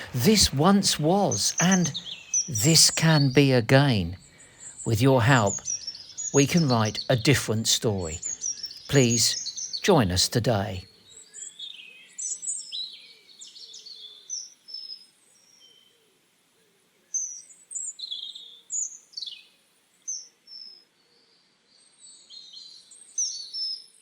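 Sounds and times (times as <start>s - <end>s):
songbirds chirping and whistling: 0.0s - 15.9s, 17.1s - 24.0s.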